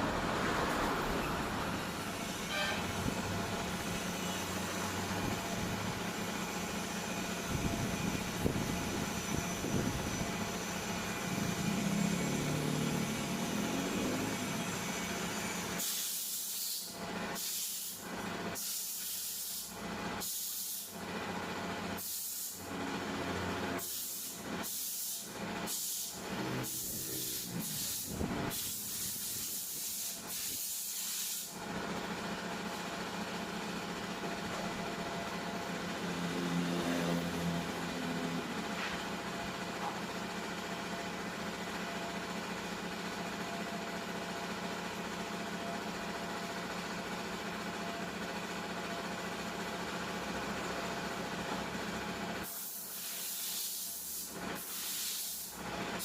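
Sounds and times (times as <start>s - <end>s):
steady mechanical hum: 0.0s - 56.0s
compressed air hissing bursts: 15.6s - 18.0s, 18.6s - 21.0s, 22.0s - 22.6s, 23.8s - 31.6s, 52.4s - 55.6s.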